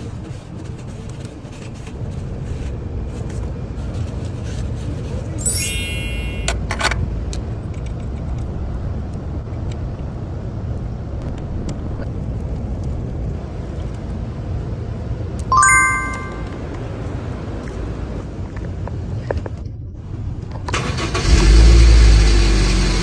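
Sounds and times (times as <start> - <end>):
short ringing chime tones: 5.4 - 6.5, 15.5 - 16.6.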